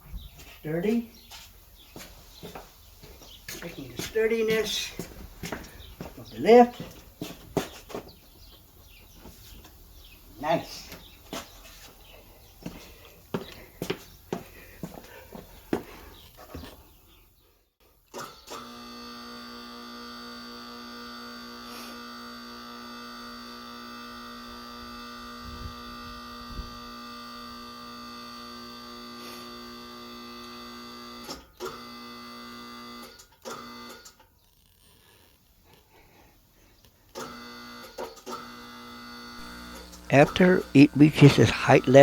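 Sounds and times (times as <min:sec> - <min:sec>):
hydraulic pump motor humming: 0:37.2 - 0:40.7.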